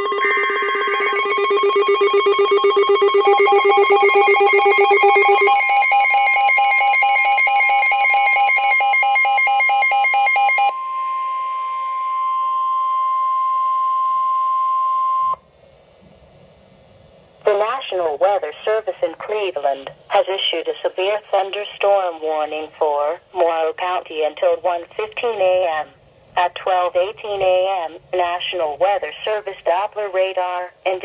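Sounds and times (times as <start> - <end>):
pulsing electronic alert tones: 0.0 - 10.7
steady warning alarm tone: 0.0 - 15.4.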